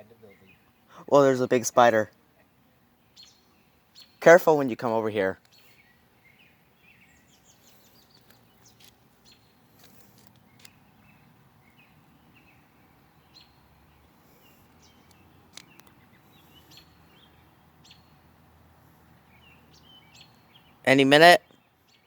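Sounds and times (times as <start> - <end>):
small birds chirping: 0.0 - 22.0
faint clicks: 9.8 - 10.8, 14.7 - 16.0.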